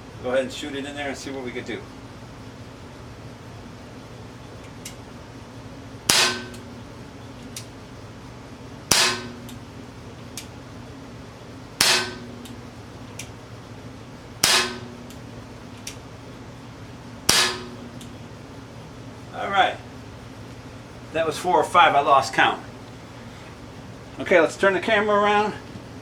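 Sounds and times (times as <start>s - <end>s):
bb pistol shots: 6.1s - 6.8s, 8.9s - 9.6s, 11.8s - 12.6s, 14.4s - 15.2s, 17.3s - 18.0s.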